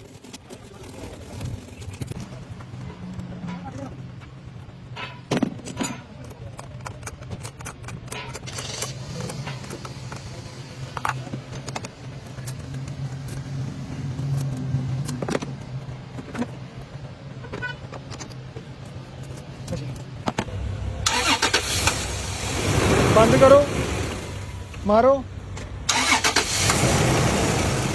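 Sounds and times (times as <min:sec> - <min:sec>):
low hum: 0:18.4 - 0:27.9.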